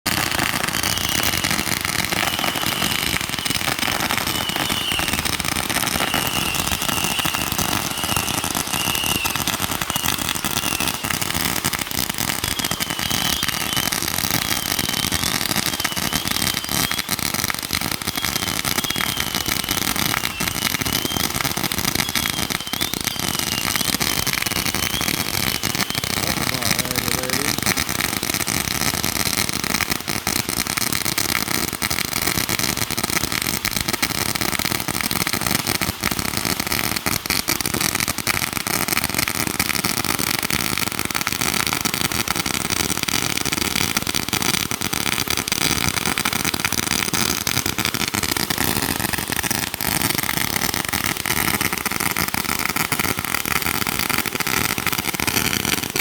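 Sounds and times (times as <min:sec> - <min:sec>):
firework fountain crackling hiss: 0:00.1 - 0:56.0
faint wavering whistle: 0:04.2 - 0:05.2, 0:06.0 - 0:11.2, 0:12.4 - 0:17.1, 0:18.1 - 0:27.5.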